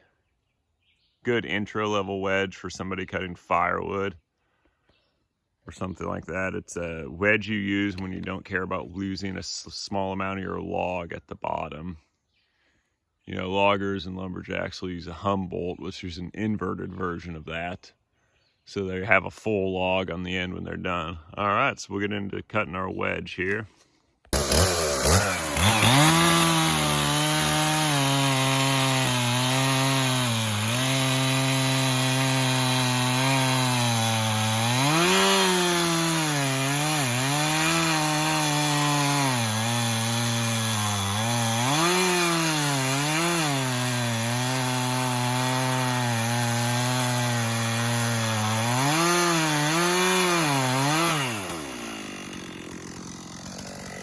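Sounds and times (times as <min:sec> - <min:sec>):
chainsaw cutting wood: 0:24.3 - 0:54.0.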